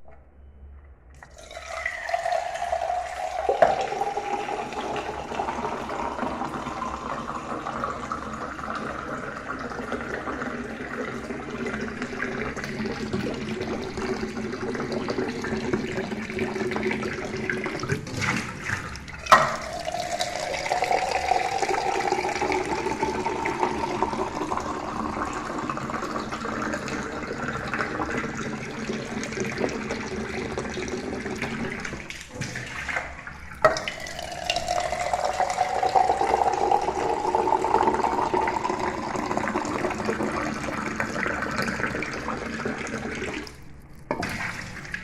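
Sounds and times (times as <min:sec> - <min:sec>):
water pouring into a glass: 0:01.2 - 0:45.0.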